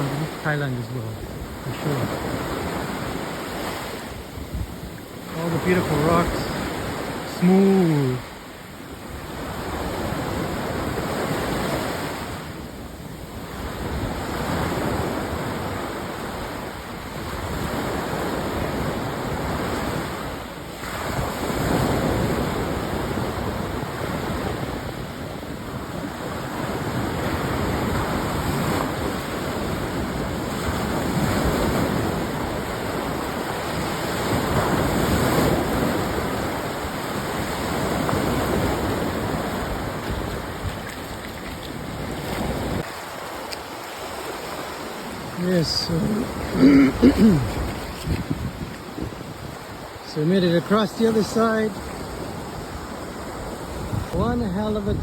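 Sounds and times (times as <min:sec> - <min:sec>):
sea surf breaking on shore: 0:00.0 - 0:55.0
wind buffeting microphone: 0:04.0 - 0:06.2, 0:21.0 - 0:43.0, 0:45.1 - 0:50.0, 0:52.0 - 0:55.0.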